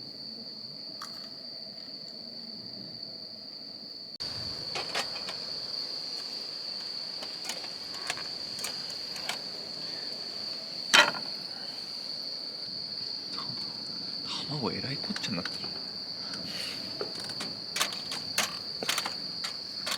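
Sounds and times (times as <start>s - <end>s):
insects chirring: 0.0s - 19.9s
light clicks and knocks: 6.2s - 9.8s, 10.9s - 11.3s, 15.1s - 19.9s.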